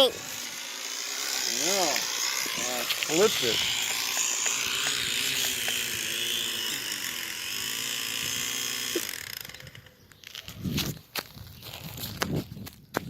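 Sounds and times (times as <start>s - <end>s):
drone propellers whirring: 0.0s - 10.1s.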